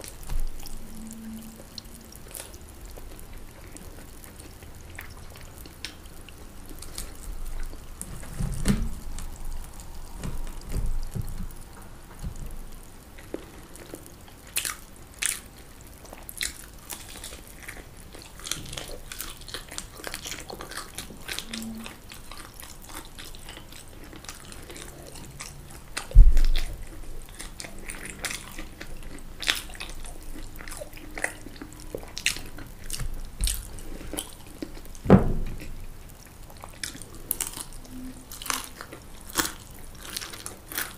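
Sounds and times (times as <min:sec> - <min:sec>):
biting and chewing: 0:00.0 - 0:40.9.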